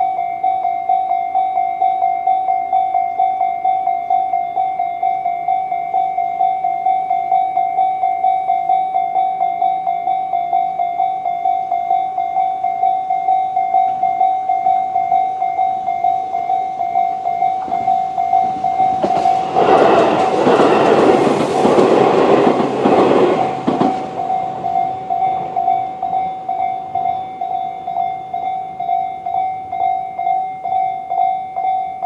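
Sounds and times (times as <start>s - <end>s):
level-crossing bell ringing: 0.0s - 32.0s
train passing with clattering wheels: 13.6s - 32.0s.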